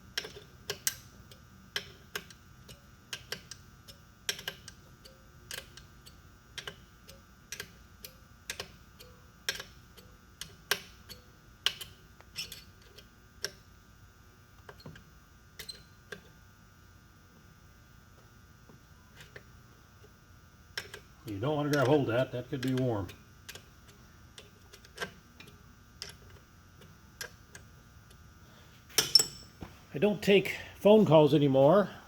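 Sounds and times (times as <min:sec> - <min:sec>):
faint steady hum: 0:00.0 - 0:32.0
metallic clicks of hand tools: 0:29.0 - 0:29.4.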